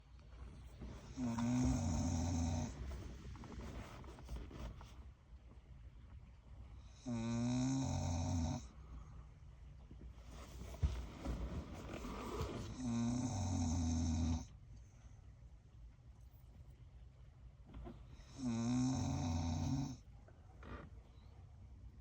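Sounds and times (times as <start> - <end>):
dog snoring loudly: 1.0 - 3.2, 6.9 - 8.8, 11.8 - 14.5, 18.2 - 20.0.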